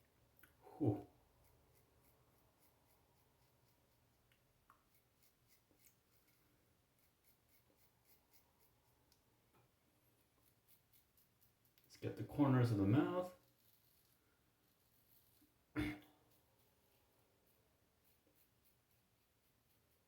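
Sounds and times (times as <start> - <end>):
razor scratching stubble: 1.3 - 4.0, 4.8 - 9.2, 10.2 - 16.8.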